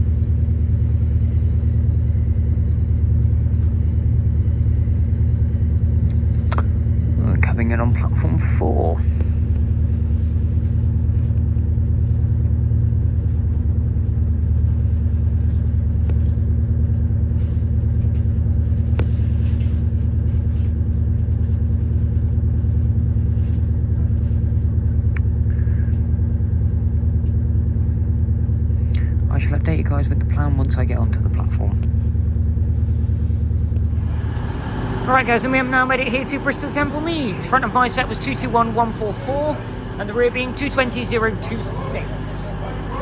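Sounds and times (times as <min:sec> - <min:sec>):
train drone and rumble: 0:00.0 - 0:43.0.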